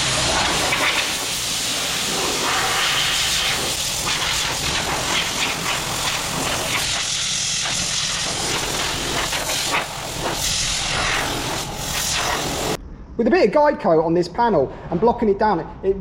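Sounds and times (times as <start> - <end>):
sandpaper scratching on metal: 0.2 - 12.7.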